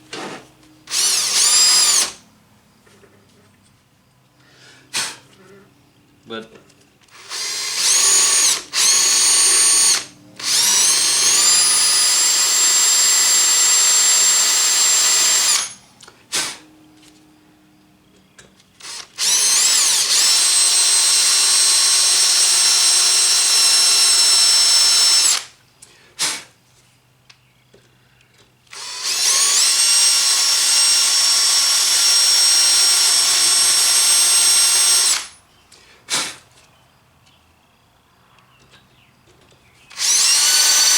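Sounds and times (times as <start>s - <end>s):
electric drill whining: 0.9s - 2.2s, 7.1s - 15.8s, 18.8s - 25.5s, 28.7s - 35.4s, 39.9s - 40.9s.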